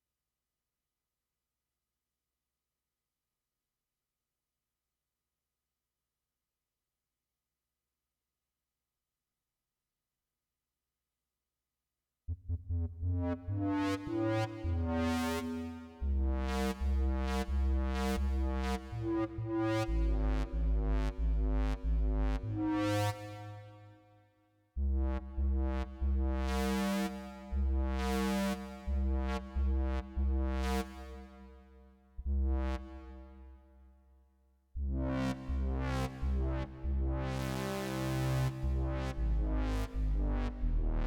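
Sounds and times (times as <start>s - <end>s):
pulsing synth bass: 12.3s - 23.4s, 24.8s - 31.3s, 32.2s - 33.4s, 34.8s - 41.0s.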